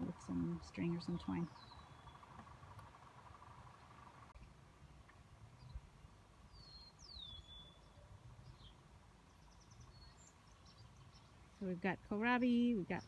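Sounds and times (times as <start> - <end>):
high ticks: 0.0 - 4.4
distant bird calls: 0.0 - 13.0.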